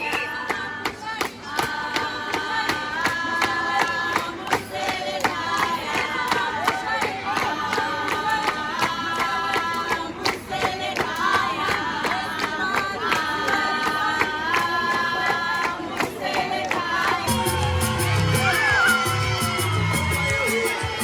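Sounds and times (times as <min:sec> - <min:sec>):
crowd noise: 0:00.0 - 0:21.0
group singing in harmony: 0:00.0 - 0:21.0
people clapping: 0:00.0 - 0:21.0
bass-heavy music track: 0:17.3 - 0:21.0.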